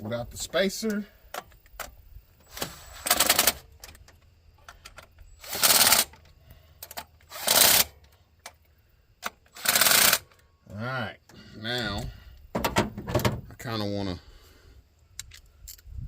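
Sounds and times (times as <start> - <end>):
ratchet wrench clicking: 6.8 - 8.0, 9.5 - 10.3.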